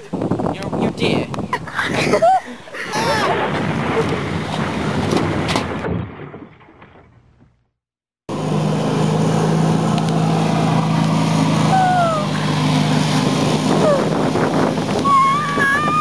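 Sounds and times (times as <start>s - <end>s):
rumbling noise: 3.0s - 7.8s
engine drone with low hum: 8.3s - 16.0s.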